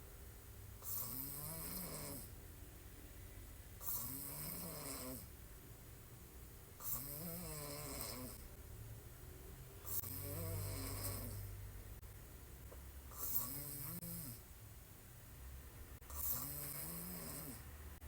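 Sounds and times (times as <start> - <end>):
woman snoring: 0.8 - 2.3, 3.8 - 5.3, 6.8 - 8.5, 9.8 - 11.6, 13.1 - 14.4, 16.1 - 17.7.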